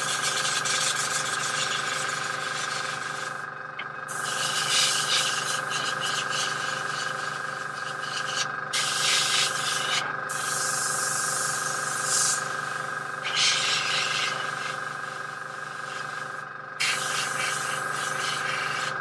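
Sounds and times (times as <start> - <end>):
air compressor hum: 0.0 - 19.0
airbrush hissing air: 4.1 - 19.0.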